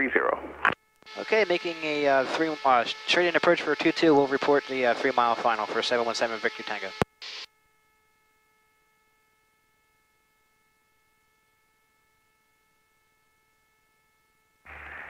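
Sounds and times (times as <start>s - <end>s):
faint electrical hum: 0.0s - 15.0s
radio static burst: 0.4s - 7.5s, 14.7s - 15.0s.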